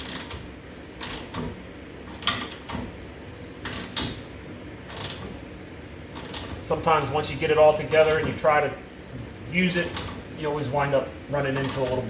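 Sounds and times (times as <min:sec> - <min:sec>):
tools clicking and knocking: 0:02.2 - 0:02.9.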